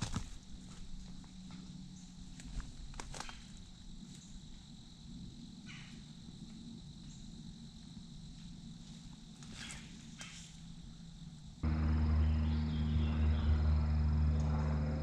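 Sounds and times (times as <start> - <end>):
high-pitched drone: 11.6 - 15.0.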